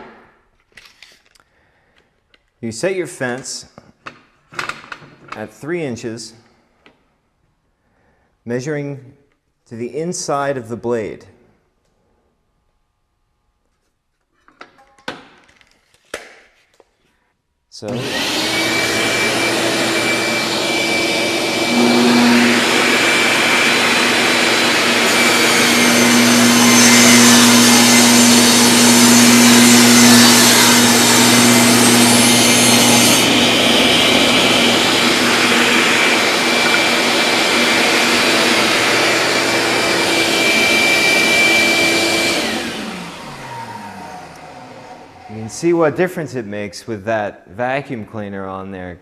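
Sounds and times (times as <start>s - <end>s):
table saw running: 17.9s - 45.6s
vacuum cleaner running: 17.9s - 45.7s
saw blade ripping wood: 21.5s - 39.1s.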